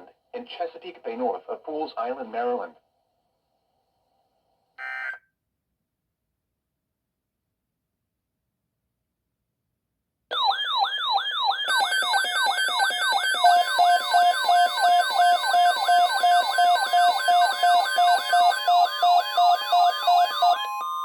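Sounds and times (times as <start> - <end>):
electronic siren yelp sweeps: 10.3 - 21.0
pulsing beeps: 13.4 - 21.0.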